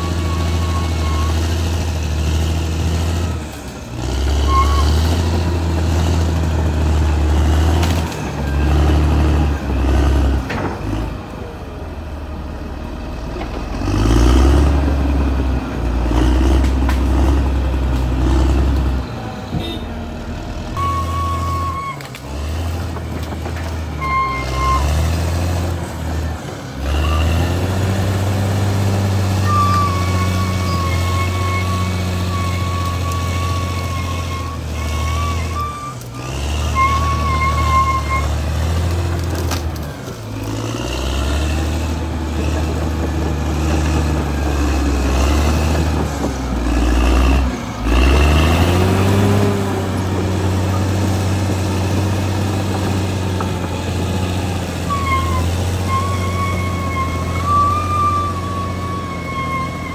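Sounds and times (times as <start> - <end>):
bulldozer diesel engine under load: 0.0 - 59.9
wavering high squeal: 29.3 - 36.0, 54.9 - 59.9.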